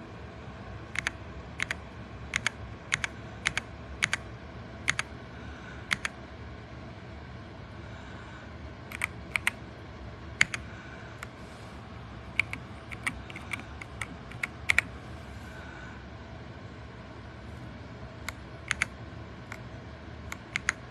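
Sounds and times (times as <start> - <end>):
mechanical keyboard keystrokes: 1.0 - 4.2, 4.9 - 5.1, 5.9 - 6.1, 8.9 - 9.6, 10.4 - 10.6, 12.4 - 14.9, 18.3 - 19.6, 20.3 - 20.9.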